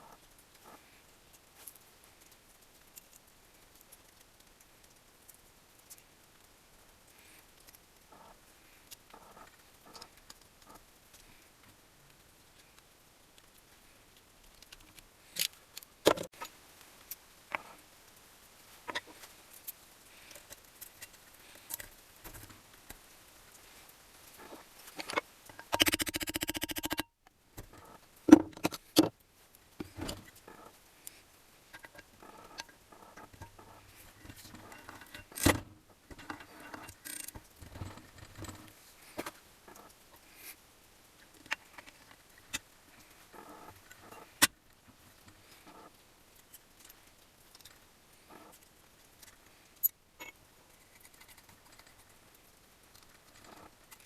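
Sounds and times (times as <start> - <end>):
metal parts and tools clinking: 25.0 - 27.1.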